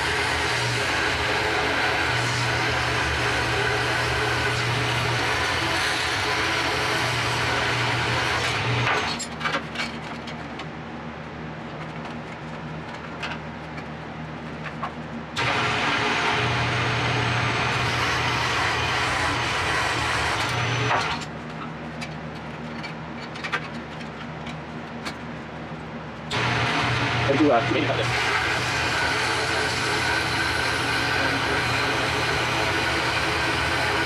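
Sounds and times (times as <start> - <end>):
power tool cutting steel: 0.0 - 9.3, 15.4 - 21.3, 26.3 - 34.0.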